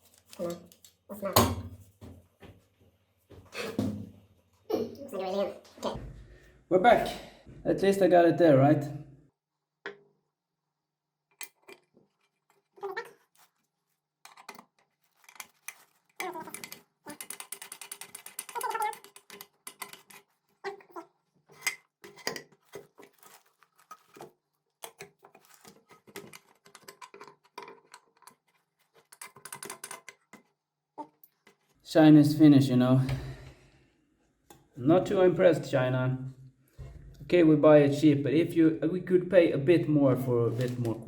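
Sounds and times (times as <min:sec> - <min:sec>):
metal parts clicking and clinking: 0:14.3 - 0:20.3.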